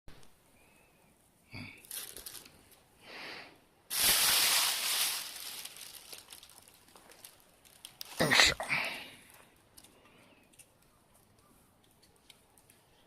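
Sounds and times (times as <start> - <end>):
baby sneezing: 8.2 - 8.7.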